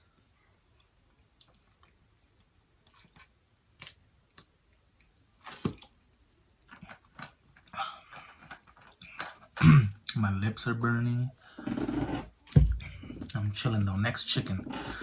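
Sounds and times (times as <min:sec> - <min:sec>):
person chewing: 0:00.8 - 0:06.0.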